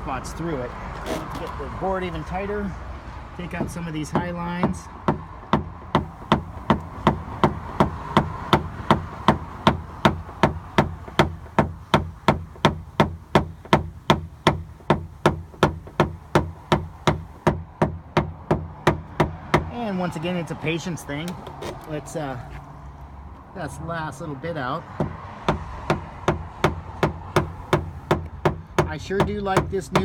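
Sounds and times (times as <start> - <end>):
tapper knocking on metal panel: 3.5 - 19.7.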